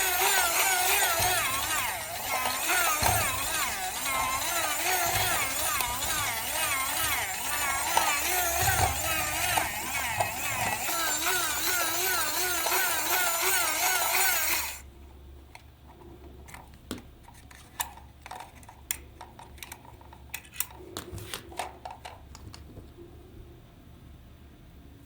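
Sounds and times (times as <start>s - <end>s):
toy motor whining: 0.0s - 14.8s.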